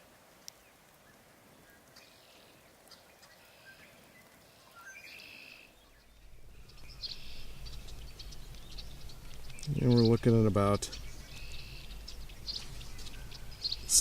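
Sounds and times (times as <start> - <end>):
distant songbirds chirping: 0.0 - 14.0
low rumble: 6.0 - 14.0.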